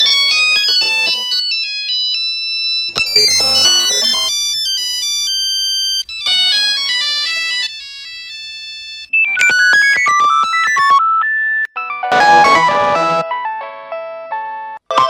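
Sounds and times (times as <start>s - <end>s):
electronic phone ringtones: 0.0s - 1.4s, 2.9s - 13.2s.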